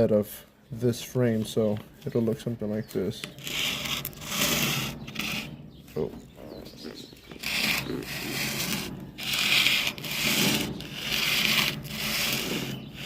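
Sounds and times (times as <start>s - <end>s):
sandpaper rasping on sheet metal: 3.3s - 5.7s, 7.4s - 13.0s.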